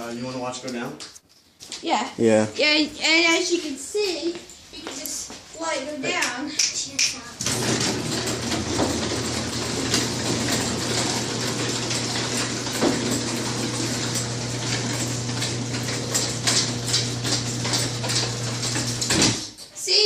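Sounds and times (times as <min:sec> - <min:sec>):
garage door motor hum: 0:07.2 - 0:19.6
chain rattling: 0:07.5 - 0:19.1.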